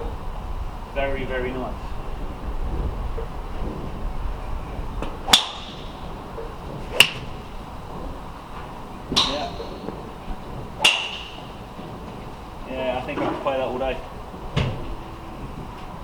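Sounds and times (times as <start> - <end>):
golf club striking ball: 5.0 - 7.5, 9.1 - 10.1, 10.8 - 12.2.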